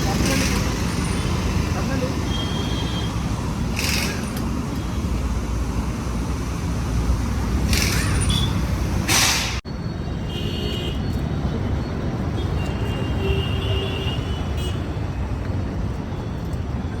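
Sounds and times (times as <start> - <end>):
road vehicle rumble: 0.0 - 17.0
short hissing bursts: 3.0 - 9.6.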